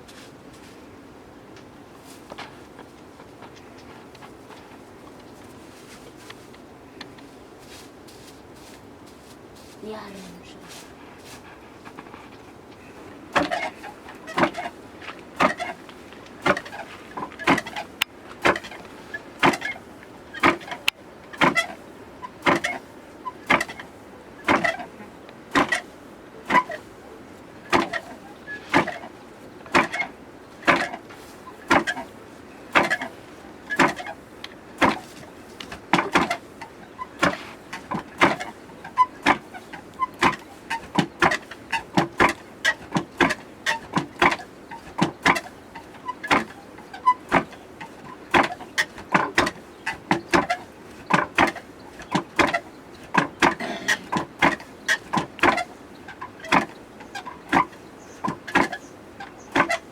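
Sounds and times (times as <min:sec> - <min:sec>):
sharp knocks of hand milling: 0:13.3 - 0:14.8, 0:15.4 - 0:15.8, 0:16.4 - 0:18.8, 0:19.4 - 0:19.8, 0:20.4 - 0:21.8, 0:22.4 - 0:22.8, 0:23.4 - 0:24.9, 0:25.5 - 0:26.9, 0:27.7 - 0:32.1, 0:32.7 - 0:34.2, 0:34.8 - 0:58.8, 0:59.5 - 0:59.9.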